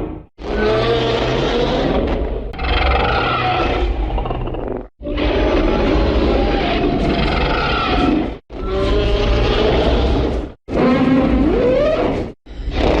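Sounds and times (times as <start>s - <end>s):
creature roar: 2.6s - 4.3s.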